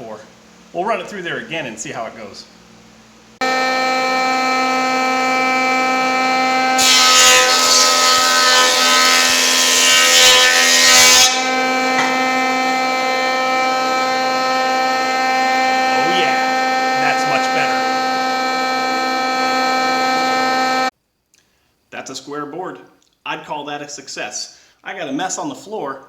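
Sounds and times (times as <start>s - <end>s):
electric wood planer whining: 3.4s - 20.9s
planer shaving wood: 3.4s - 20.9s.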